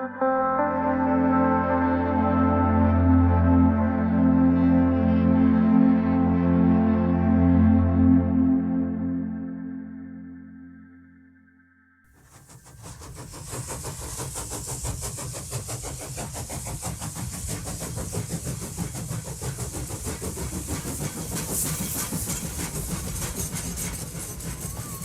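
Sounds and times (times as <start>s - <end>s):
train running: 12.1s - 25.0s.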